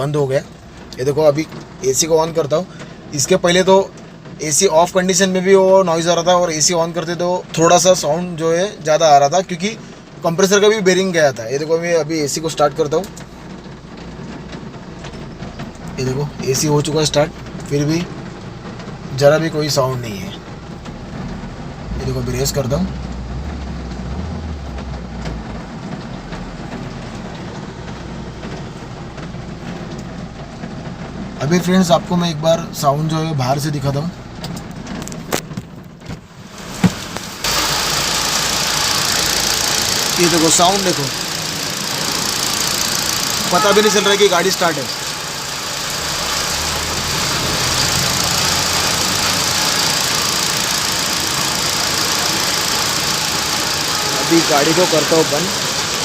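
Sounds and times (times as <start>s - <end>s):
rain hiss: 0.0s - 56.0s
car engine revving: 15.0s - 31.3s, 36.3s - 56.0s
steady hiss: 36.4s - 56.0s.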